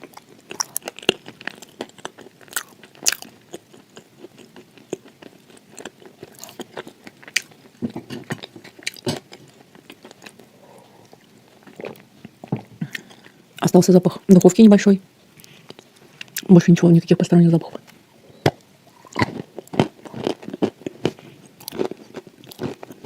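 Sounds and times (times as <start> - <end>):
crunchy biting and chewing: 0.0 - 13.3, 18.5 - 23.0.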